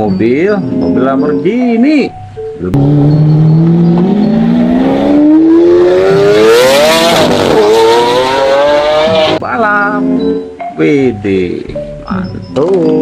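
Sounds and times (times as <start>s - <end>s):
race car engine accelerating: 2.8s - 9.4s.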